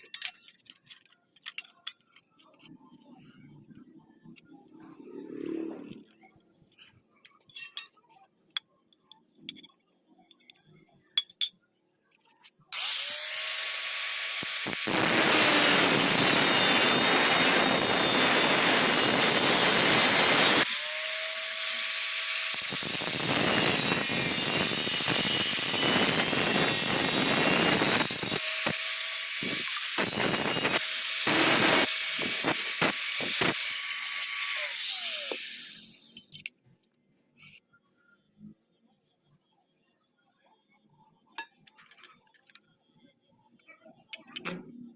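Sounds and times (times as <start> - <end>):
cut-off disc grinding steel: 12.7 - 36.3.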